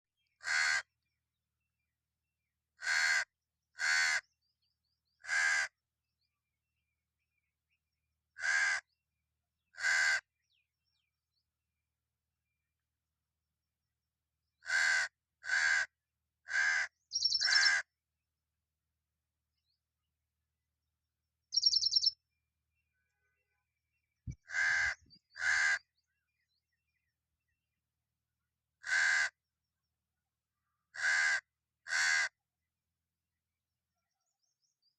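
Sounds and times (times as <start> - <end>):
crow cawing: 0.4 - 0.9, 2.8 - 4.2, 5.2 - 5.8, 8.4 - 8.9, 9.7 - 10.2, 14.6 - 15.9, 16.5 - 17.9, 24.4 - 25.9, 28.8 - 29.4, 30.9 - 32.4
crow chirping: 0.4 - 1.0, 2.8 - 4.3, 5.2 - 5.8, 8.4 - 9.0, 9.7 - 10.4, 14.6 - 15.9, 16.5 - 17.9, 21.5 - 22.2, 24.3 - 26.0, 28.8 - 29.4, 30.9 - 32.4.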